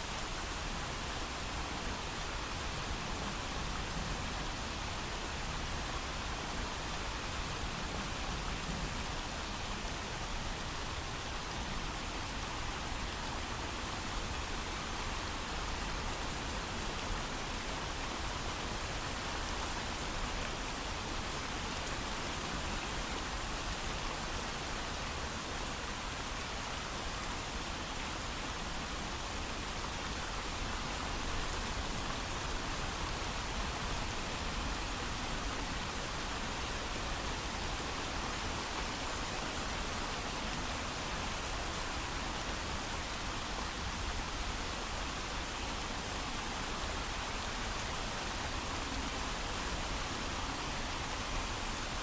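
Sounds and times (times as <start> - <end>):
heavy rain: 0.0 - 52.0.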